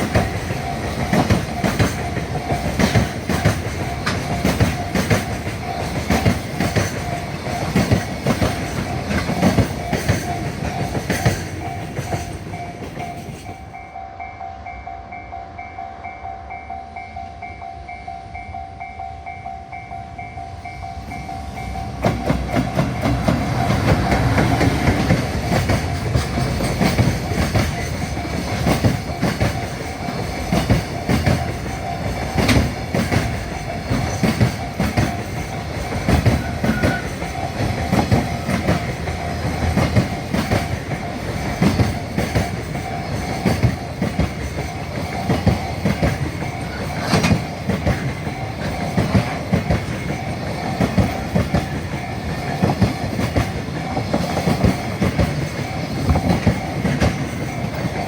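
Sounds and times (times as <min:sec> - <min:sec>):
train wheels clacking on rails: 0:00.0 - 0:14.2, 0:17.4 - 0:58.0
crossing warning bell: 0:00.0 - 0:58.0.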